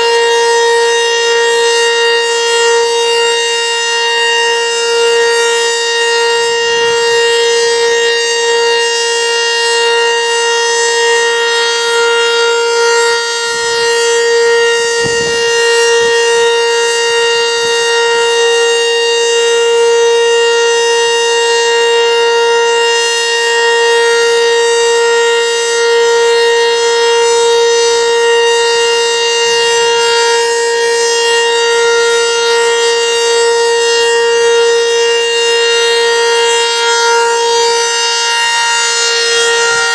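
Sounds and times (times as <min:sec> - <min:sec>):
warning siren steady tone: 0:00.0 - 0:39.9
wind gust on microphone: 0:15.0 - 0:16.4.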